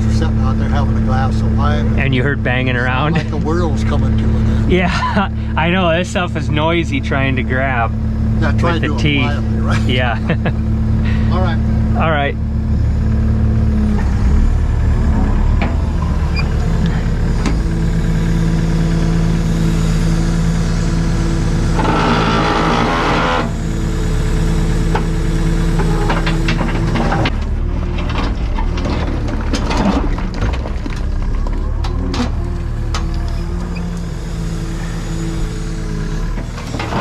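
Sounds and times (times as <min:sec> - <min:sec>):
excavator diesel engine running: 0:00.0 - 0:37.0
rocks knocking and clacking: 0:26.2 - 0:32.3.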